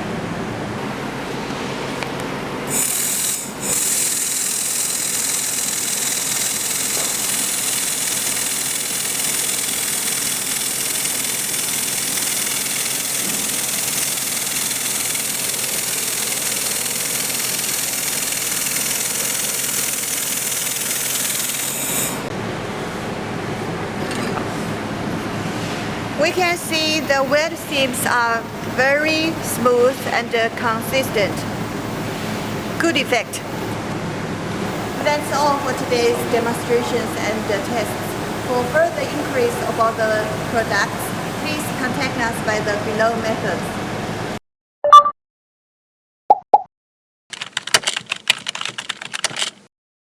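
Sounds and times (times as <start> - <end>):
low machine hum: 0.0 - 44.4
laser welding hiss: 2.7 - 22.3.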